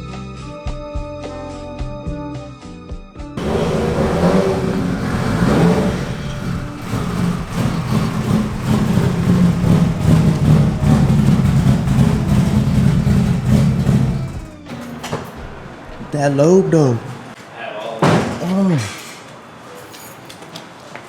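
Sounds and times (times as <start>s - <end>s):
car engine choppy idle: 3.4s - 14.7s.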